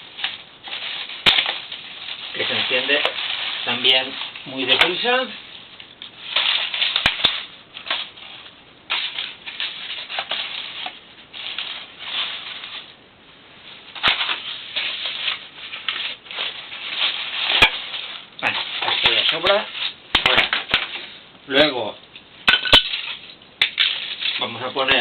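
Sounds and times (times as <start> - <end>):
paper and cardboard crumpling: 0.1 - 5.5, 6.1 - 13.0, 13.8 - 21.2.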